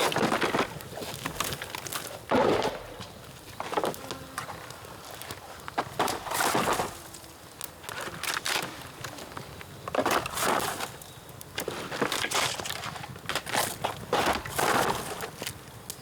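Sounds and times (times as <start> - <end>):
branches snapping: 1.2 - 4.1.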